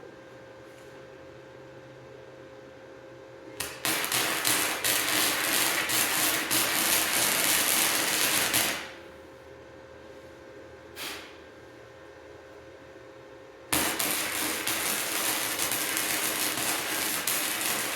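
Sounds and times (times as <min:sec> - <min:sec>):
welder crackling: 0:03.6 - 0:09.0, 0:13.7 - 0:17.9.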